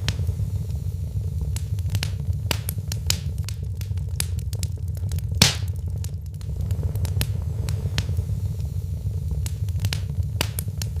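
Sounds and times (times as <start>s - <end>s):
low rumble of flames: 0.0s - 11.0s
wood fire crackling and popping: 0.0s - 11.0s.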